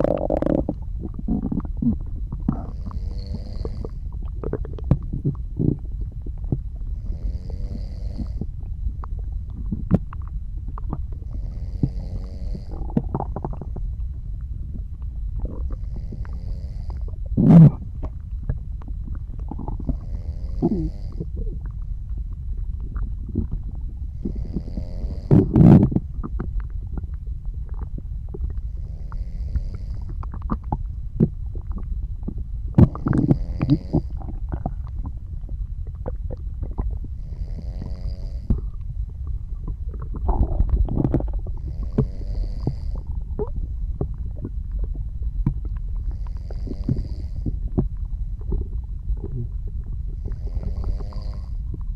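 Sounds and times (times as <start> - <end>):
soft snoring breaths: 0.0 - 8.6, 11.2 - 13.8, 15.4 - 17.9, 19.4 - 21.7, 23.2 - 26.4, 28.6 - 31.8, 32.8 - 35.2, 36.0 - 38.8, 39.9 - 43.6, 45.7 - 51.9
stomach gurgling and rumbling: 0.0 - 51.9.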